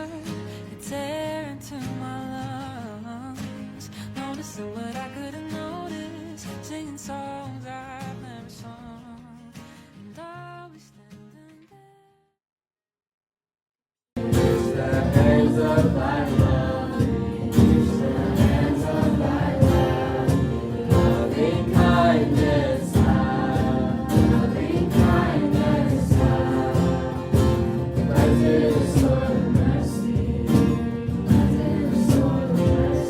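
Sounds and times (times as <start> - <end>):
song with singing and beat: 14.2 - 33.0.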